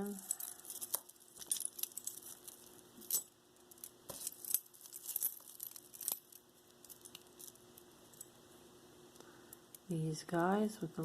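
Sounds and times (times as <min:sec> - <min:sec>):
earrings clinking: 0:00.0 - 0:08.5.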